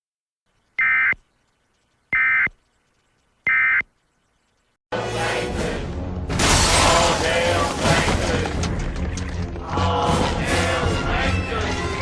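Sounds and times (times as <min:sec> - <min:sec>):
electronic data bursts: 0:00.8 - 0:04.6.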